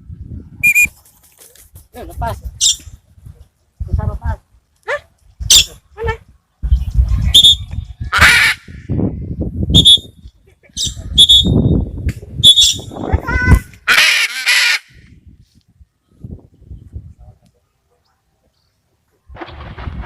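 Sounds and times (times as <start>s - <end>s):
high chirps: 0.6s - 0.9s
parrots squawking: 13.8s - 15.0s.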